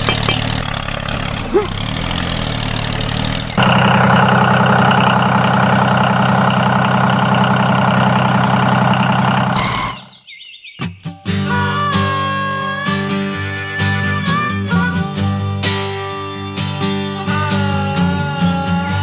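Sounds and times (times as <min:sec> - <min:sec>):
small engine running: 0:00.0 - 0:10.1.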